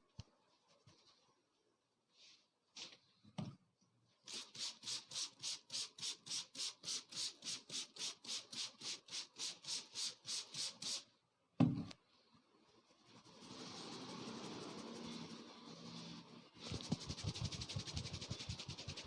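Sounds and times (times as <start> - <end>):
hands rubbing scalp and hair: 16.6 - 19.0.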